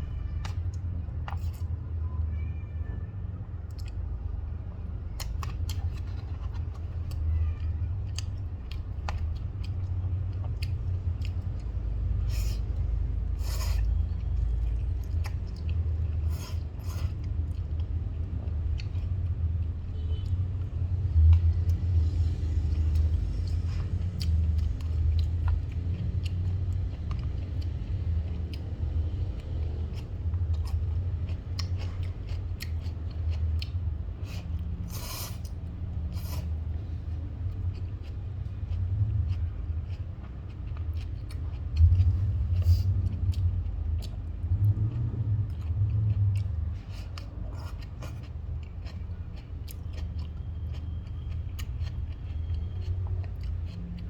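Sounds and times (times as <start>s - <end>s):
steady low rumble: 8.1s - 54.0s.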